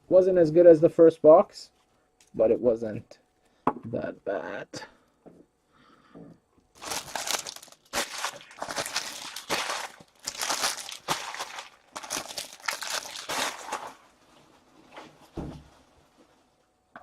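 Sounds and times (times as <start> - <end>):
foil and plastic wrappers crinkling: 6.7 - 16.0.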